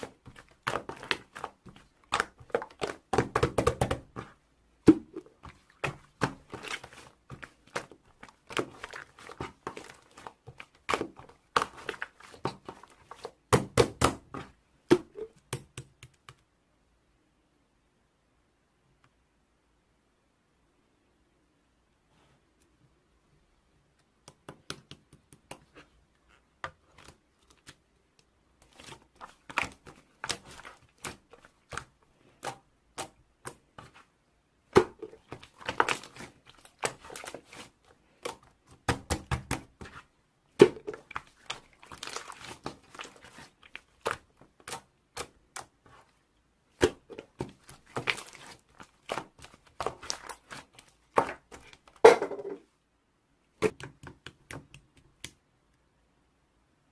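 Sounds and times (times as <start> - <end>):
slime popping and crackling: 0.0 - 15.7, 40.6 - 45.7, 46.7 - 52.1.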